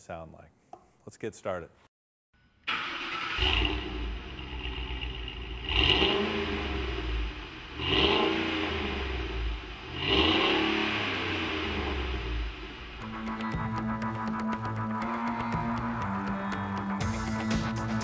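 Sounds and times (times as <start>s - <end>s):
truck engine idling and revving: 3.0s - 14.0s.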